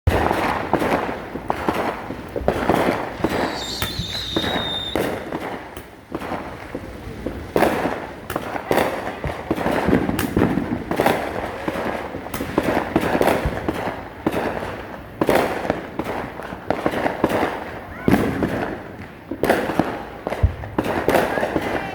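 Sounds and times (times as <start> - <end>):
firework spraying and crackling: 0.1 - 21.9
firework whistle: 2.6 - 5.7.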